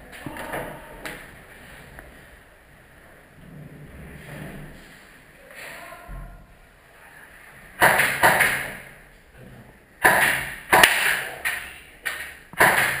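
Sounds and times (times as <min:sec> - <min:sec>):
airsoft gun cracks with echo: 0:07.8 - 0:08.8, 0:10.0 - 0:13.0.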